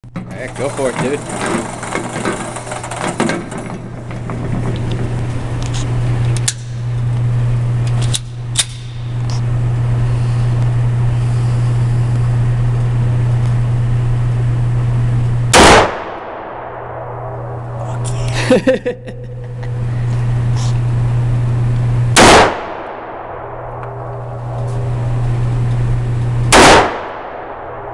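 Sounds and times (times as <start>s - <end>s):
steady low hum: 0.0s - 27.9s
loud handgun shot: 15.5s - 17.6s, 22.2s - 23.7s, 26.5s - 27.9s.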